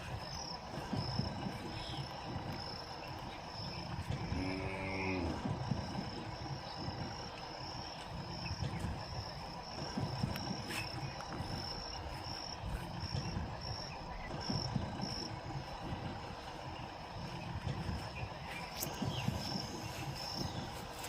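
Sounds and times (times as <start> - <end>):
insects trilling: 0.0 - 21.0
low outdoor rumble: 0.0 - 21.0
low animal call: 3.9 - 6.9.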